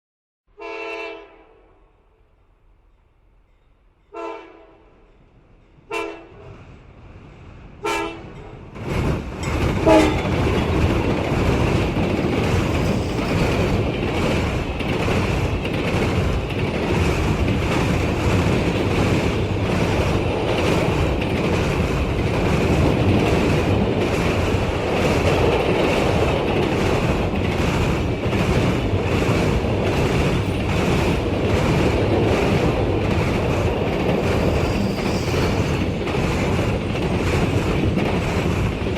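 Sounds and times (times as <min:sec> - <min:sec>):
train horn blasts: 0:00.5 - 0:02.0, 0:04.1 - 0:04.9, 0:05.9 - 0:06.5, 0:07.8 - 0:08.4, 0:09.8 - 0:10.3
train rumbling past: 0:02.0 - 0:38.9
wheels clacking over rail joints: 0:08.7 - 0:38.9.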